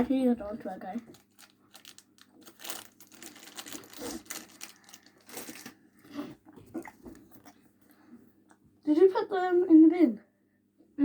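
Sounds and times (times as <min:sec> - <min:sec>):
rustling and crinkling handling noise: 0:00.0 - 0:08.4.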